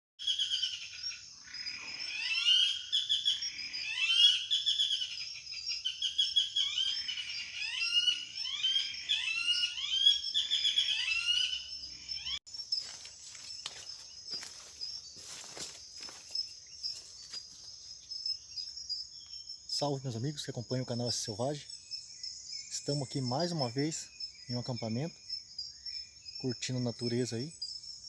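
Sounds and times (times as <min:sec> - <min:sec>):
chorus of chirping animal calls: 0:00.2 - 0:12.4
high insect drone: 0:00.2 - 0:28.0.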